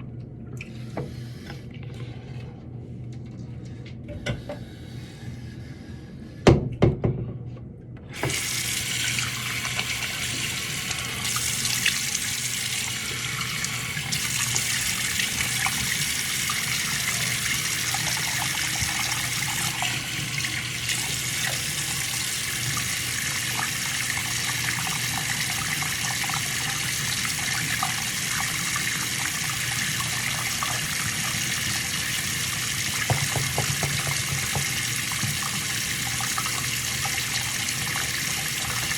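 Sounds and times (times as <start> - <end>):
tap running into sink: 8.2 - 10.6, 17.4 - 21.8, 32.9 - 36.7.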